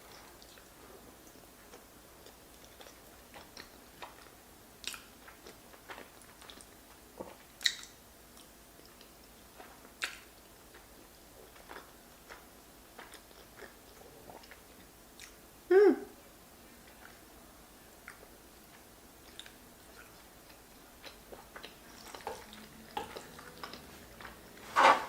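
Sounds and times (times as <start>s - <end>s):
wet chewing sounds: 0.0s - 15.5s, 18.0s - 24.7s.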